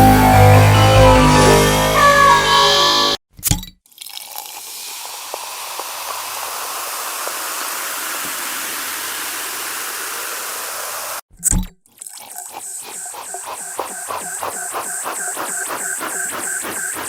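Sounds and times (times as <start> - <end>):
electronic beat: 0.0 - 3.0
rushing hiss: 4.6 - 11.2.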